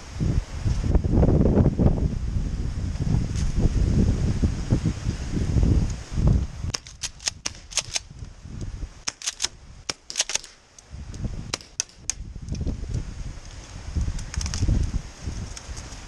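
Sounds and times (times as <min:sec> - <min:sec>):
airsoft guns firing: 0:09.0 - 0:10.6, 0:11.5 - 0:12.1.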